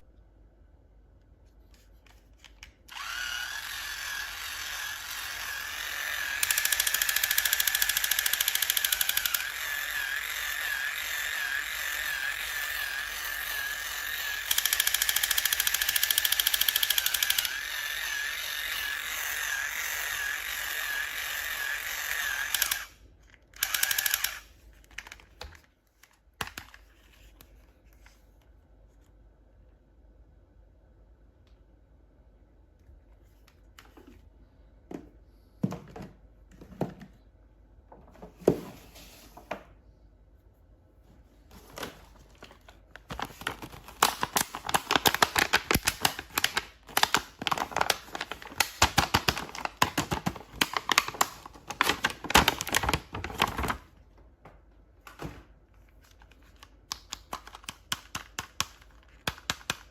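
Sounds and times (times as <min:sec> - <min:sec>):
small motor whining: 0:02.9 - 0:23.0.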